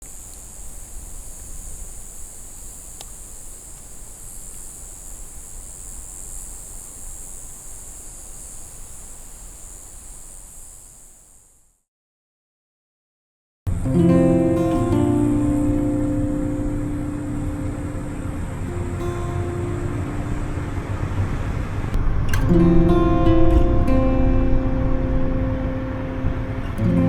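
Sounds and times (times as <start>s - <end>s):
high-pitched hiss: 0.0s - 11.8s, 13.7s - 27.0s
faint click: 3.0s - 3.9s
wind buffeting microphone: 16.4s - 27.0s.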